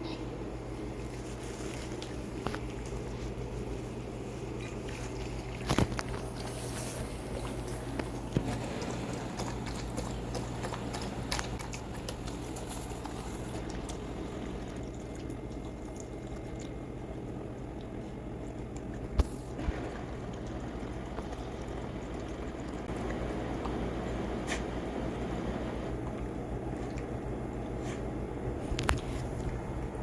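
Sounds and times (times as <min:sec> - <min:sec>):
low hum: 0:00.0 - 0:30.0
soup bubbling in a pot: 0:19.0 - 0:28.2.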